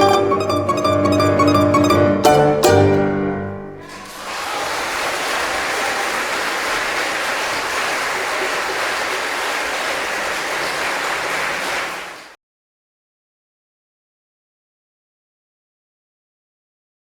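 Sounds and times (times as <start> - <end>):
audience applauding: 3.8 - 12.4.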